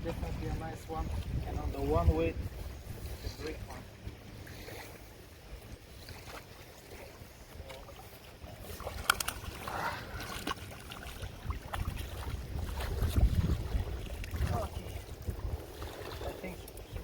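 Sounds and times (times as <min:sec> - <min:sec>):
wind rumble on microphone: 0:00.0 - 0:17.0.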